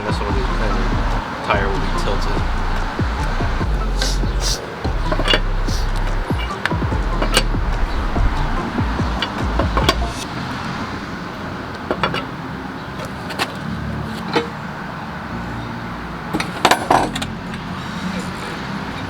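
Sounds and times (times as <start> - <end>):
steady low hum: 0.0 - 11.2
lug wrench metallic clicks: 6.4 - 7.5.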